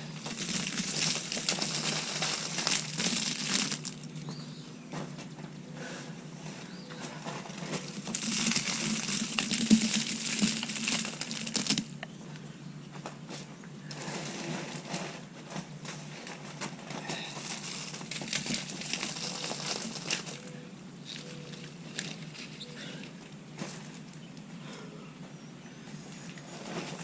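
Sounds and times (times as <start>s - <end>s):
mulch rustling: 0.0s - 4.2s
plastic bag crinkling: 0.0s - 4.3s, 7.5s - 12.0s, 17.2s - 22.8s.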